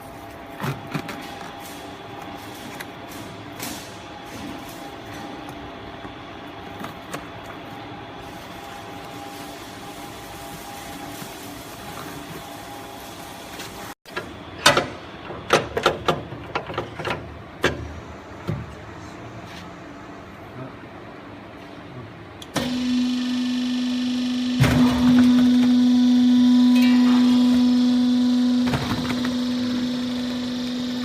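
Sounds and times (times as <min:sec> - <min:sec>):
baling press humming: 0:22.6 - 0:31.0.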